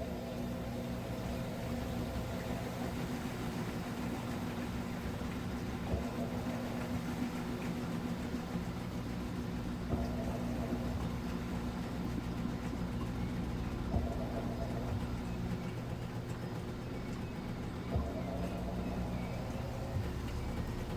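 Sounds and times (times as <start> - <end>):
washing machine motor hum: 0.0 - 20.9
washing machine soft knock: 5.8 - 8.3, 9.8 - 20.9.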